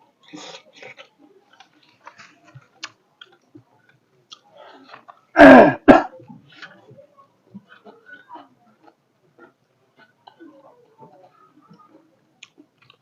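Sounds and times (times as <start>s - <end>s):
person chewing: 0.3s - 5.2s, 7.5s - 10.5s, 12.4s - 13.0s
person clearing throat: 5.3s - 6.3s.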